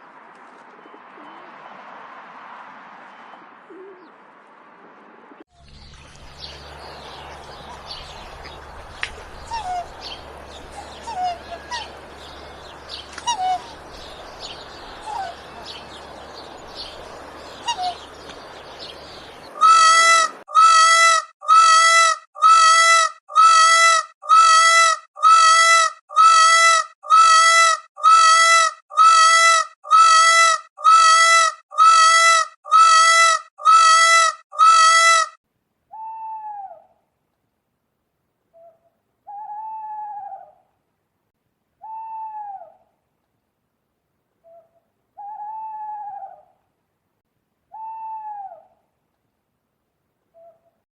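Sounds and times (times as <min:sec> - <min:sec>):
birds chirping faintly: 0:05.6 - 0:19.6
loud pitched bird call: 0:06.5 - 0:20.8.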